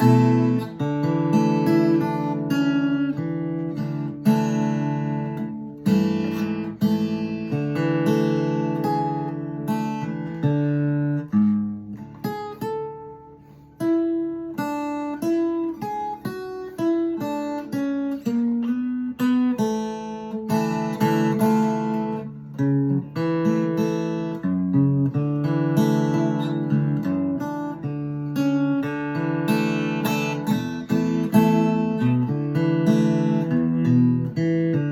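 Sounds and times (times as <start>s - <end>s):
fingerpicked acoustic guitar: 0.0s - 34.9s.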